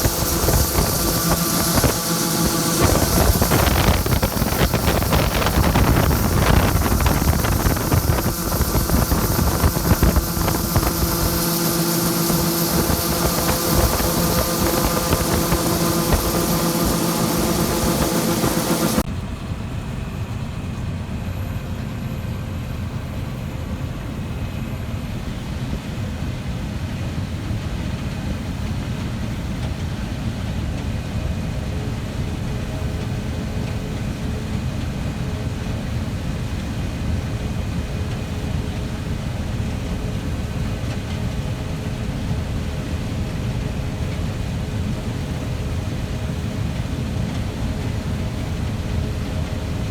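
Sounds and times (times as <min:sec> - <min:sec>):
farm machinery engine running: 0:00.0 - 0:19.1.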